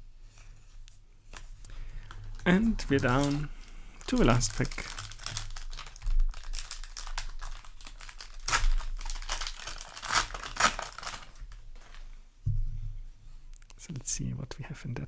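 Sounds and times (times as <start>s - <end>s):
foil pack tearing and crinkling: 1.4s - 12.1s.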